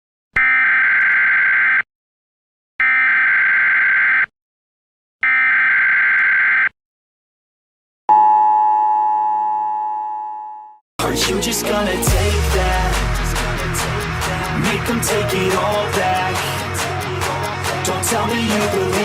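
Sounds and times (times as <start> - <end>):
low ringing tone: 8.1 - 10.8
hip-hop music: 11.0 - 19.0.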